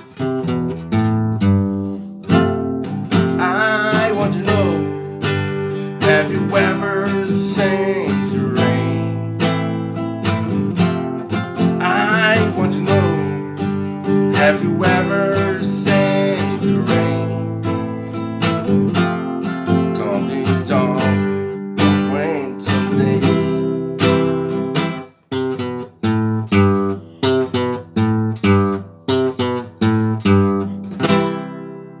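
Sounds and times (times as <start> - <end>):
acoustic guitar strumming: 0.0 - 32.0.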